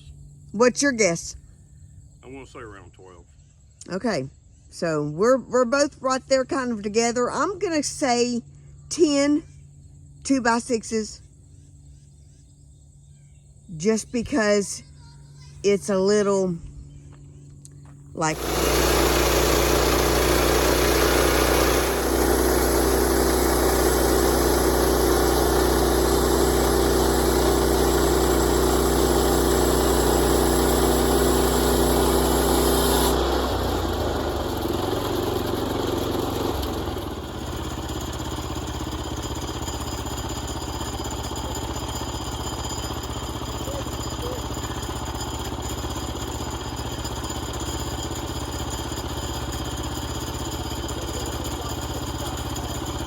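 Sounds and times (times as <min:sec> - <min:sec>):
engine running steadily: 0:15.3 - 0:53.0.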